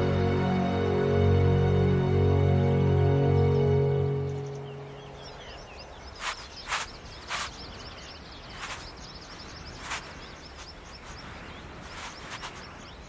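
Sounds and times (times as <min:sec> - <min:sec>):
small birds chirping: 0:03.3 - 0:13.0
sharp crackling hisses: 0:06.0 - 0:12.8.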